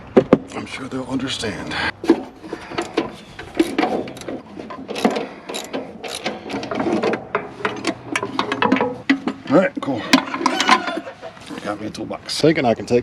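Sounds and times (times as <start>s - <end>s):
ratchet wrench clicking: 3.6s - 6.4s.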